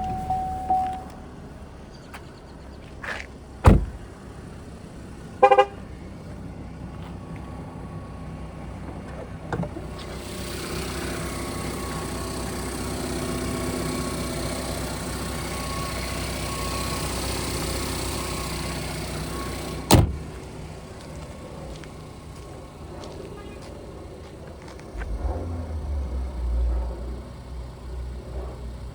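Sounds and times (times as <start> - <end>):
short electronic chime: 0.0 - 1.1
loud thump: 3.6 - 4.1.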